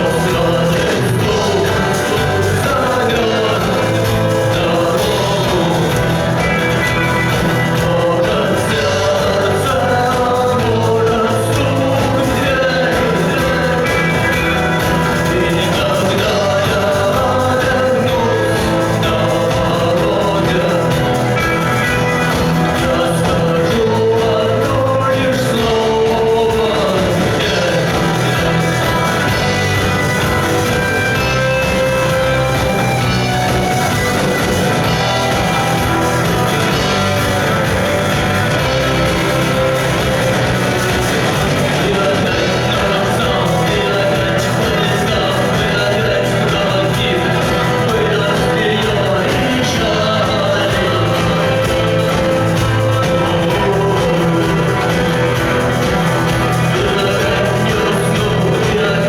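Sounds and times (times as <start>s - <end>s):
rock band with sung vocals: 0.0s - 59.0s.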